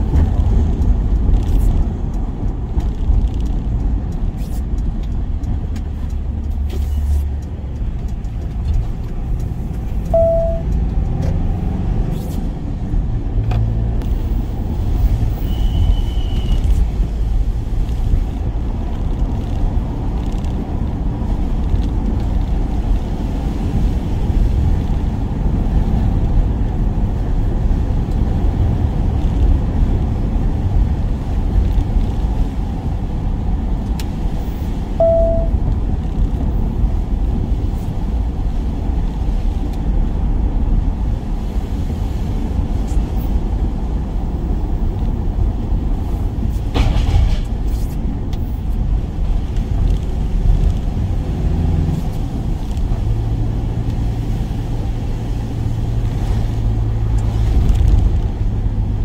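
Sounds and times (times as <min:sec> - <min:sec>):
van engine and road rumble: 0:00.0 - 0:59.0
brief higher tone: 0:10.1 - 0:10.7, 0:35.0 - 0:35.6
short beep: 0:10.1 - 0:10.7, 0:15.4 - 0:16.6, 0:35.0 - 0:35.6.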